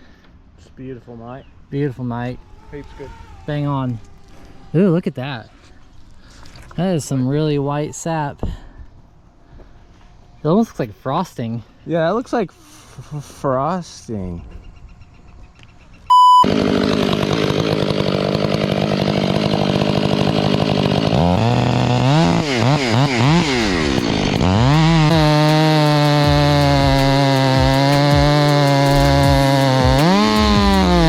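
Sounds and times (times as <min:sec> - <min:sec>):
short beep: 0:16.1 - 0:16.5
chainsaw engine revving: 0:16.1 - 0:31.0.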